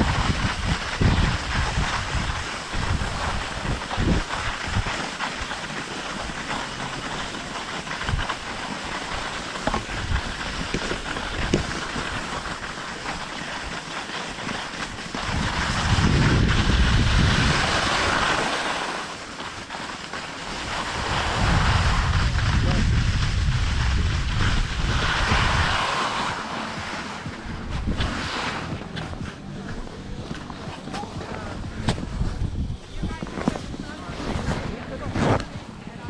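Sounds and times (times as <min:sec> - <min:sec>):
wind buffeting microphone: 0:00.0 - 0:05.5, 0:15.2 - 0:18.4, 0:20.6 - 0:35.6
skis sliding over snow: 0:00.0 - 0:36.0.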